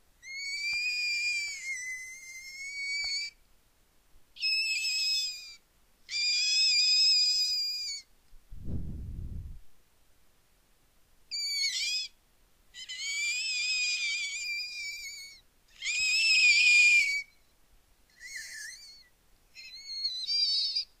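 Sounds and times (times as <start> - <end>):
person making squealing cries: 0.2 - 3.4, 12.8 - 17.3, 18.1 - 20.8.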